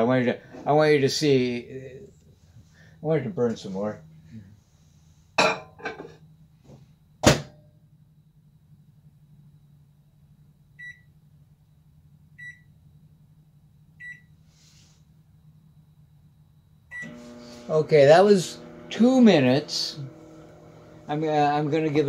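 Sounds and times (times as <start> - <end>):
low steady hum: 0.0 - 22.0
microwave oven beeping: 10.7 - 11.2, 12.3 - 12.9, 13.9 - 14.4, 15.6 - 22.0.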